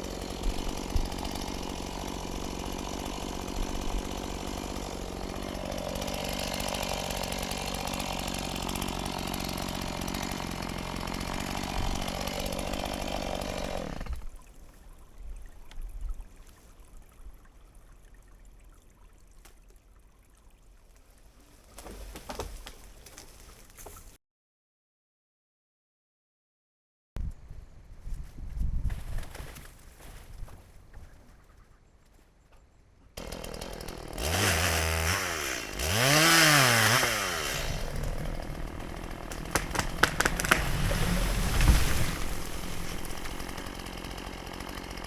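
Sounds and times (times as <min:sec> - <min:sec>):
chainsaw cutting: 0:00.0 - 0:14.4, 0:33.2 - 0:45.0.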